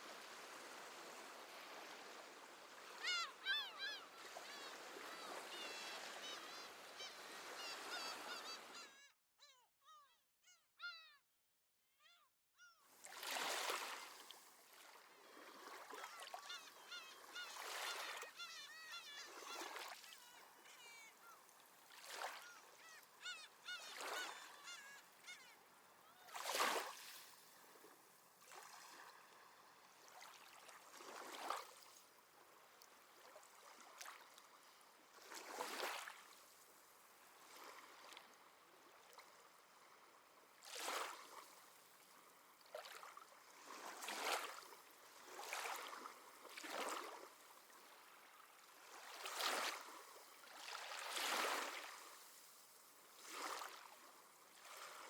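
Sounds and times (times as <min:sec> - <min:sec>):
gentle sea waves: 0:00.0 - 0:09.1, 0:12.8 - 0:55.0
seabirds calling: 0:02.8 - 0:11.2, 0:15.9 - 0:26.5.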